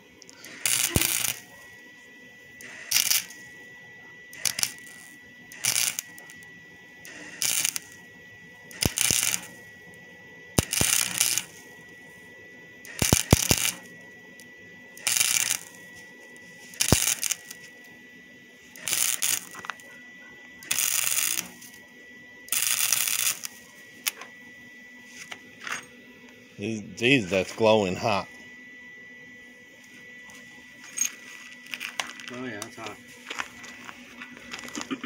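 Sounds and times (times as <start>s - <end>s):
arc welding crackling: 0.0s - 24.3s, 30.8s - 35.0s
faint high whine: 0.0s - 35.0s.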